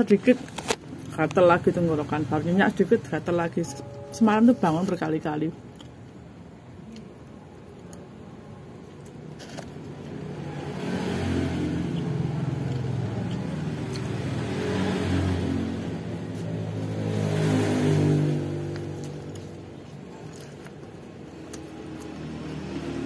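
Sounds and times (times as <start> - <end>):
vehicle engine passing: 10.0 - 23.0.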